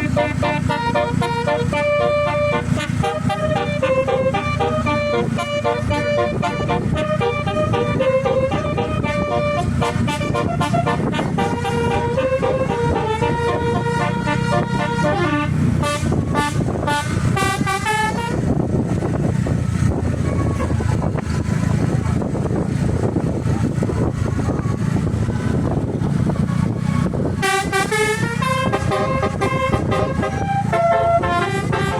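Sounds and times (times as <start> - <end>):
multi-tone air horn tune: 0.0 - 18.8, 27.4 - 31.9
steady low rumble: 2.0 - 31.9.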